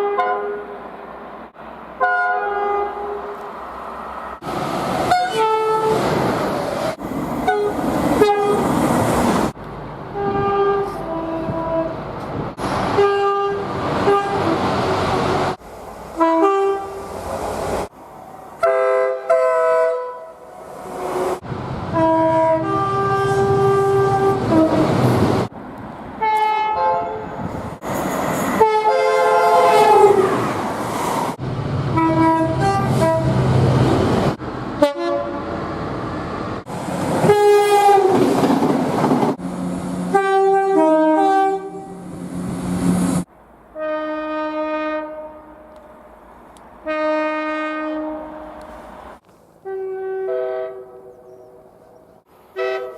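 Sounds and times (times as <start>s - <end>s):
train horns: 0.0s - 0.9s, 2.0s - 3.5s, 5.1s - 6.0s, 7.4s - 8.7s, 10.2s - 12.0s, 12.9s - 15.6s, 16.2s - 17.2s, 18.6s - 25.2s, 26.2s - 27.5s, 28.6s - 30.5s, 31.9s - 33.6s, 34.8s - 35.6s, 37.2s - 38.3s, 40.1s - 42.2s, 43.8s - 45.9s, 46.8s - 48.8s, 49.6s - 51.4s, 52.5s - 52.9s.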